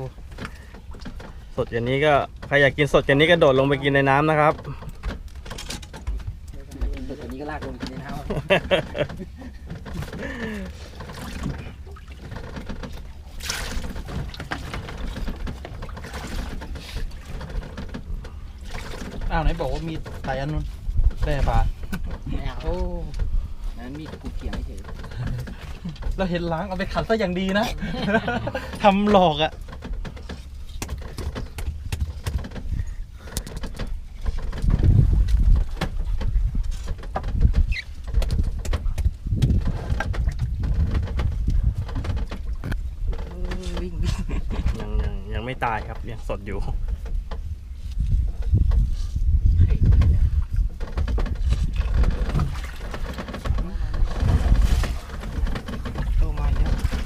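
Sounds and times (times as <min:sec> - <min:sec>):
low steady rumble: 0:00.0 - 0:57.0
water sloshing and splashing: 0:00.0 - 0:57.0
low rumble: 0:51.4 - 0:57.0.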